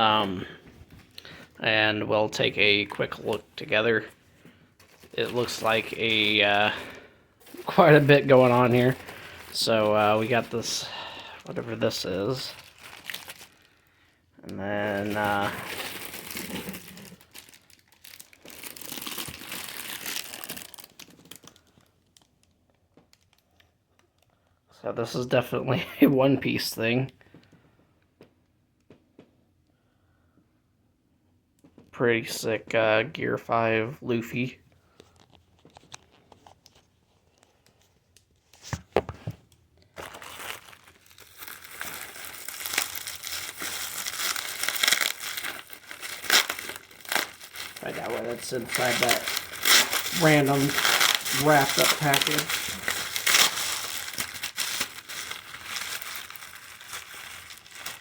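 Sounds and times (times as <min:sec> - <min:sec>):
packaging crinkling and rustling: 0:02.3 - 0:14.0, 0:14.8 - 0:24.3, 0:34.9 - 0:58.0.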